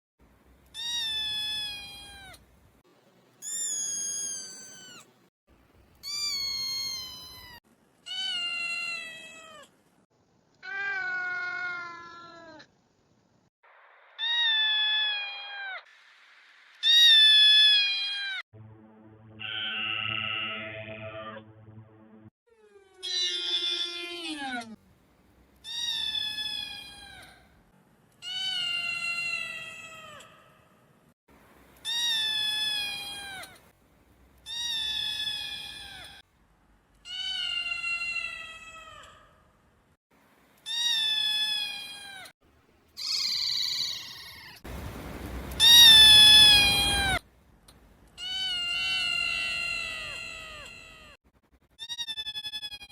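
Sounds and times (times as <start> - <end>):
cat meowing: 0.8 - 2.4, 3.4 - 5.1, 6.0 - 9.7, 10.6 - 12.7, 45.6 - 47.2, 48.2 - 51.2.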